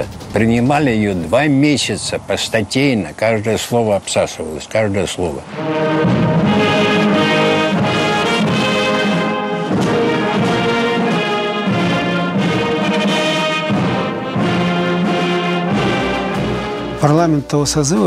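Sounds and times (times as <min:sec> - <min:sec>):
orchestral music with brass: 0:05.4 - 0:18.0.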